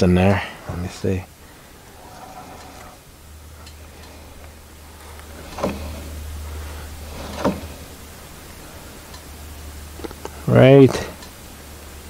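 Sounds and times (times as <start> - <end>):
sawmill drive humming: 0.0 - 12.0
sharp clunks: 5.0 - 7.8.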